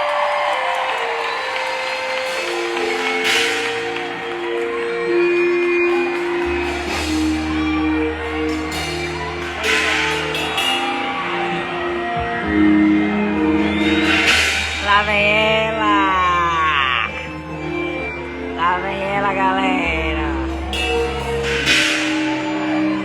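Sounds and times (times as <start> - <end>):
loud music over sound system: 1.8 - 16.3
cymbal-like crashes: 2.2 - 12.0, 13.6 - 15.5, 20.4 - 23.0
deep bass: 5.1 - 23.0.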